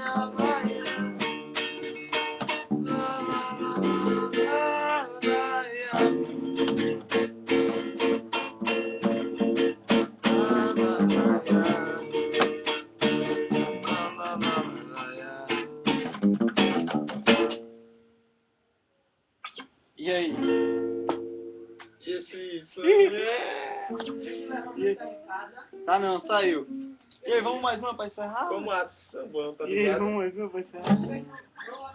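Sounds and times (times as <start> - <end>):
acoustic bass guitar: 0.0 - 18.0, 20.2 - 21.9, 23.4 - 28.1, 30.8 - 31.4
acoustic guitar: 0.0 - 18.4, 19.4 - 22.0, 22.9 - 28.9, 29.6 - 31.9.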